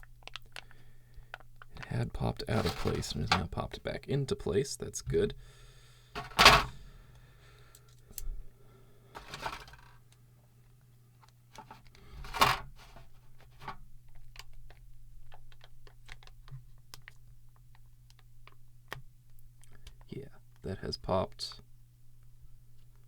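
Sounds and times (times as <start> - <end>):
harsh plastic scraping rattles: 2.5 - 3.5, 6.2 - 6.9, 9.2 - 9.9, 11.6 - 13.8.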